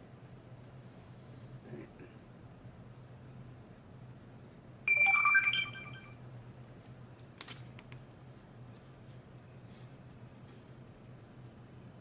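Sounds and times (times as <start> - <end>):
phone notification chime: 4.9 - 6.1.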